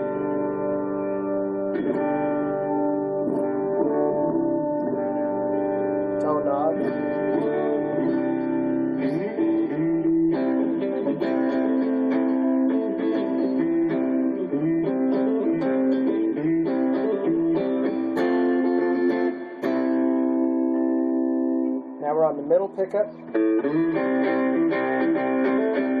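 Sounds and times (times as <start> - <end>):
electric guitar chords strummed: 0.0 - 26.0.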